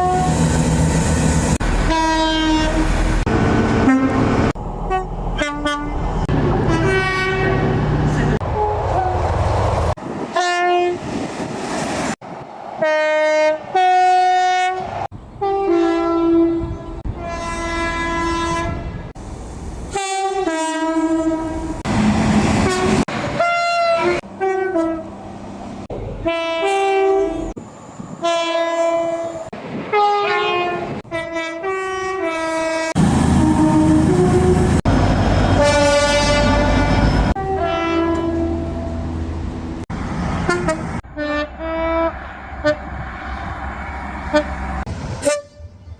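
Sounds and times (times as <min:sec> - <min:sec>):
two-tone train horn blasts: 0:00.0 - 0:00.5, 0:01.8 - 0:06.0, 0:06.6 - 0:07.8, 0:08.4 - 0:09.3, 0:10.4 - 0:11.0, 0:12.8 - 0:19.0, 0:19.9 - 0:21.7, 0:22.6 - 0:25.1, 0:26.2 - 0:27.6, 0:28.2 - 0:34.8, 0:35.6 - 0:39.2, 0:40.4 - 0:42.8, 0:44.3 - 0:44.6, 0:45.2 - 0:45.9
passing train rumble: 0:00.0 - 0:45.9.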